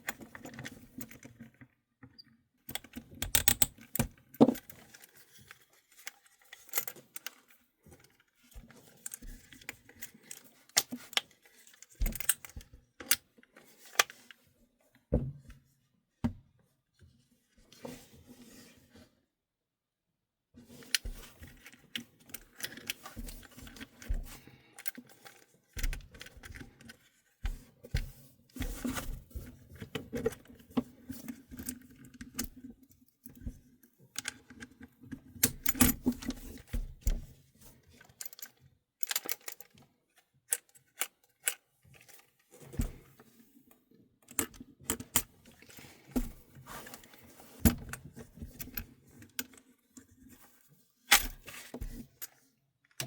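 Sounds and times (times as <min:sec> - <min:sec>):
plastic parts clicking and rattling: 0:00.0 - 0:14.4, 0:20.7 - 0:32.7, 0:34.1 - 0:37.2, 0:37.9 - 0:43.0.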